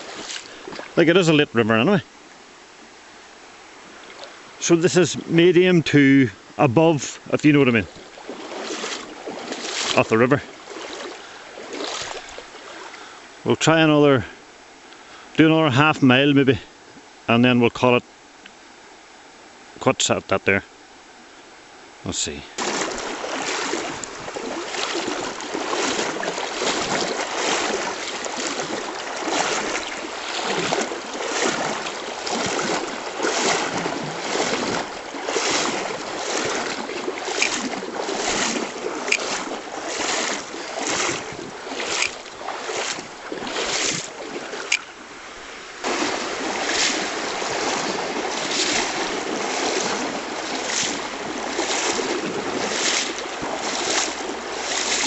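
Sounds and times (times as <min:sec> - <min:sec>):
river water rushing: 0:00.0 - 0:15.3, 0:21.6 - 0:55.0
footsteps walking: 0:08.0 - 0:10.0, 0:10.7 - 0:12.4, 0:22.6 - 0:44.9, 0:45.8 - 0:55.0.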